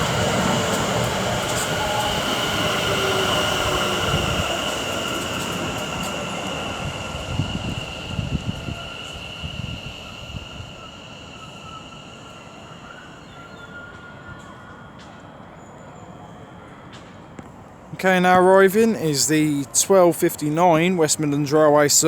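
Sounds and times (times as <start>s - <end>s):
electric train whine: 0.0s - 22.0s
wheels rumbling on rails: 0.0s - 22.0s.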